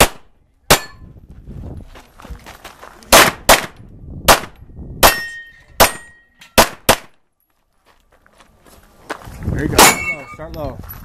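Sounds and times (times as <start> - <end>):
pistol shots: 0.0 - 1.0, 3.1 - 7.2.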